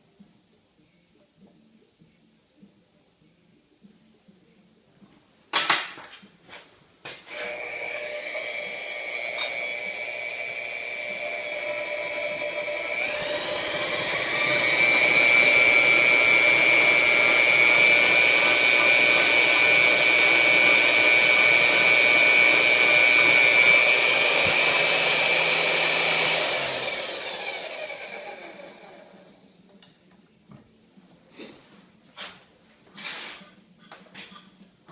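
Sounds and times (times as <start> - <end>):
drill press motor whining: 7.3 - 29.4.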